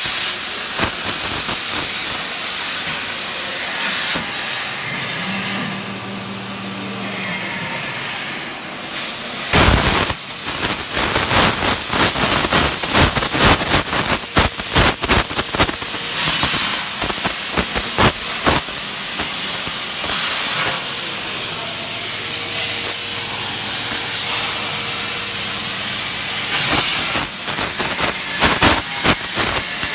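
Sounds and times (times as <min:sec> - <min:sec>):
plasma torch hissing: 0:00.0 - 0:04.9, 0:08.9 - 0:29.9
crackling: 0:09.5 - 0:20.8, 0:26.5 - 0:29.9.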